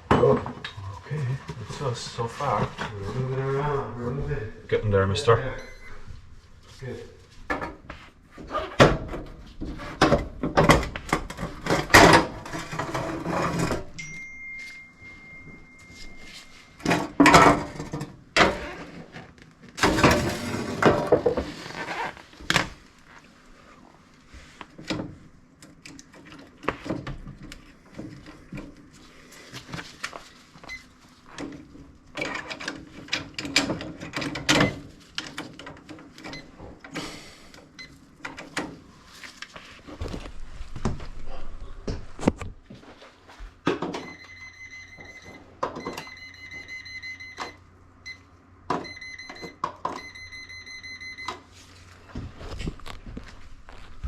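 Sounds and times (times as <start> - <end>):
dishwasher scraping and clunking: 8.4 - 14.0, 16.8 - 18.7, 19.8 - 21.8
steady high tone: 14.0 - 16.8.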